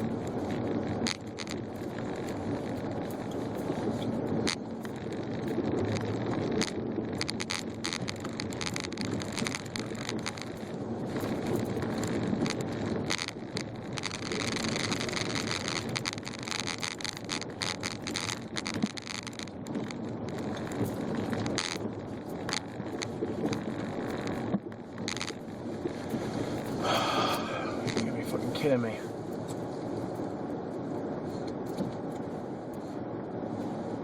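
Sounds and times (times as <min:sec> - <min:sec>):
car tyres rumbling: 0:00.0 - 0:34.0
snow crunching and scraping: 0:20.0 - 0:30.8.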